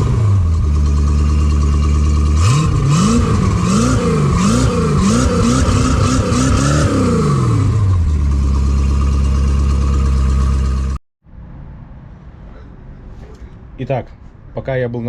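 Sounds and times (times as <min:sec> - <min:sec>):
boat engine revving and idling: 0:00.0 - 0:11.0.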